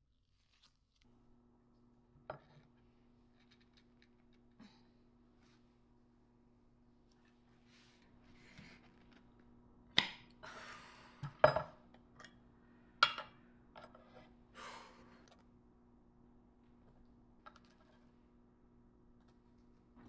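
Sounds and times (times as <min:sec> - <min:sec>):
soft rustling and scraping: 0:07.1 - 0:09.4.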